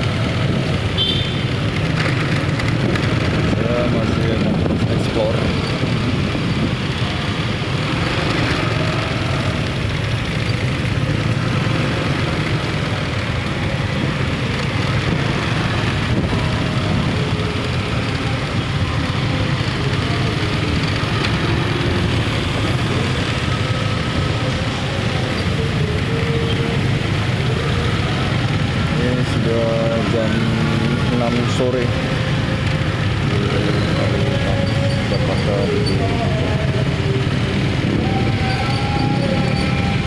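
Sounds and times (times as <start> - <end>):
road traffic: 0.0 - 40.0.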